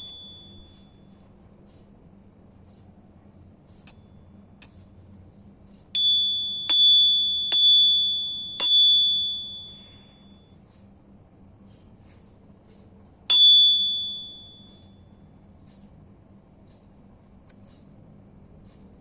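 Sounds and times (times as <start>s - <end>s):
bicycle bell ringing: 0.0s - 1.1s, 6.0s - 10.4s, 13.3s - 15.0s.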